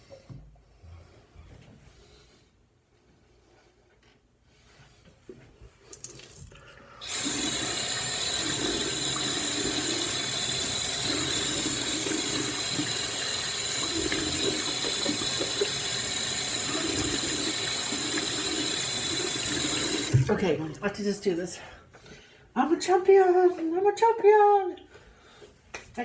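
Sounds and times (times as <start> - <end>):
faucet water running into sink: 5.9 - 21.0.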